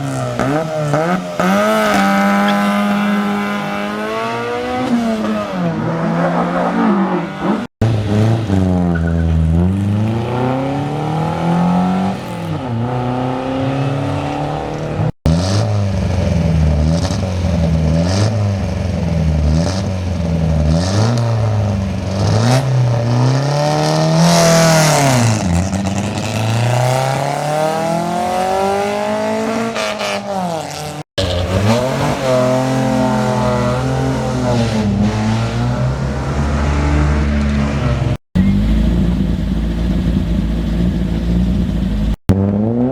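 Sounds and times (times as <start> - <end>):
race car engines accelerating: 0.0 - 42.9.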